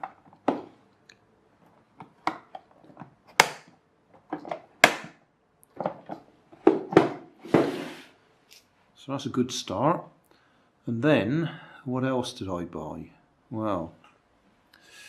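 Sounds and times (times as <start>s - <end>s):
plastic toolbox clacking: 1.9s - 7.3s.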